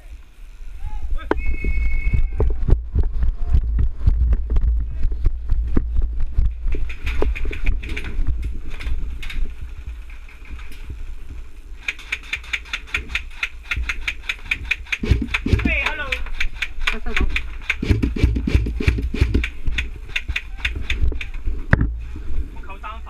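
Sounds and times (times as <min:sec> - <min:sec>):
wind rumble on microphone: 0:00.0 - 0:11.8, 0:12.9 - 0:23.0
fast even ticking: 0:11.8 - 0:21.2
footsteps and gear knocks: 0:14.8 - 0:16.2.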